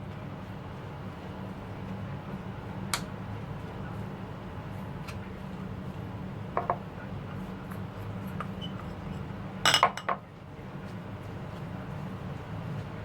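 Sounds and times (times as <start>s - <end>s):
utensils and dishes clinking: 8.6s - 10.2s.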